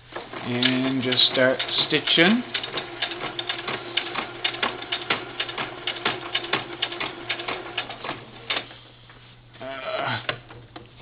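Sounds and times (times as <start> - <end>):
sewing machine stitching: 0.1 - 8.7.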